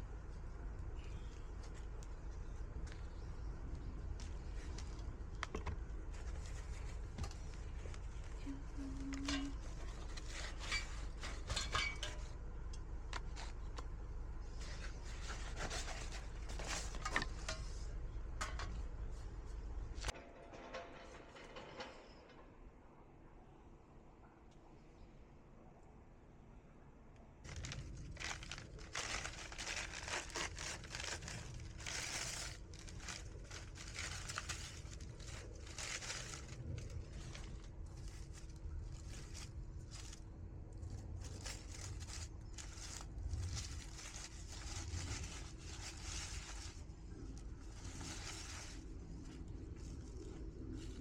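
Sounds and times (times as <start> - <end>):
faint steady hum: 0.0 - 51.0
crinkling and rustling: 0.2 - 22.4, 27.4 - 51.0.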